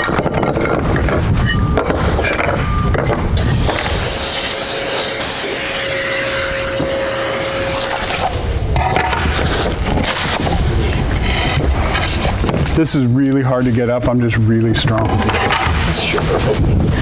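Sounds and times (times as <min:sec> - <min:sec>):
router cutting wood: 0:00.0 - 0:12.2.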